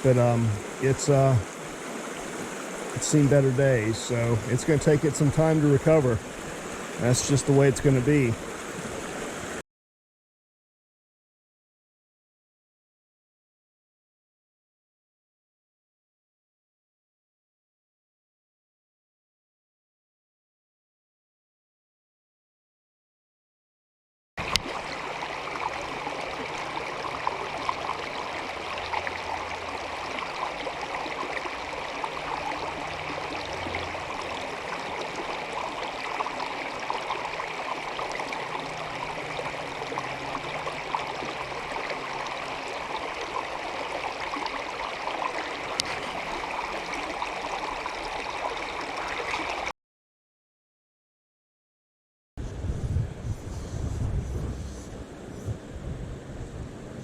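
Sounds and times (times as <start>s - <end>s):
stream running over rocks: 0.0s - 9.6s, 24.4s - 49.7s.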